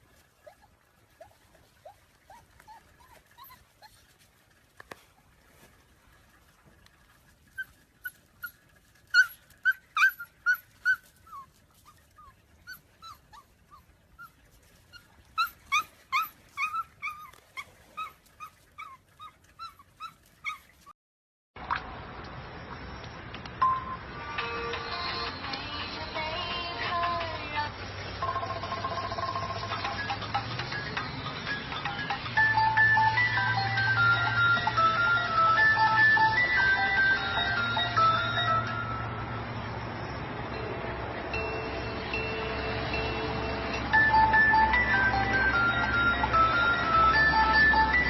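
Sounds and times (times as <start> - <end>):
dog whimpering: 0.4 - 4.0, 7.5 - 21.0.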